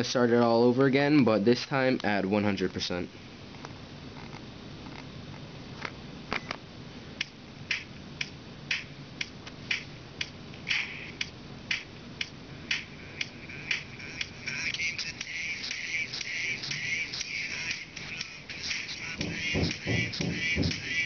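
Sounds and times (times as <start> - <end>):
tinny music from headphones: 5.8 - 21.0.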